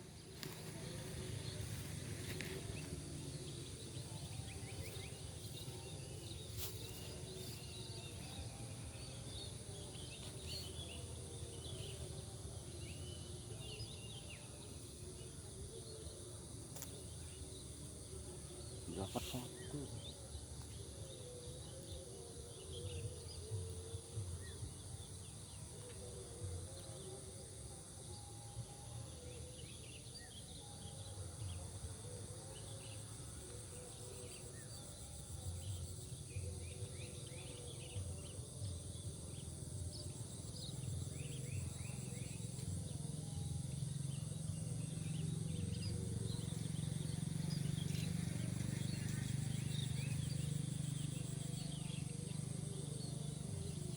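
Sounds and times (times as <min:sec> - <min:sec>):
high insect drone: 0:00.0 - 0:53.9
small birds chirping: 0:32.6 - 0:53.9.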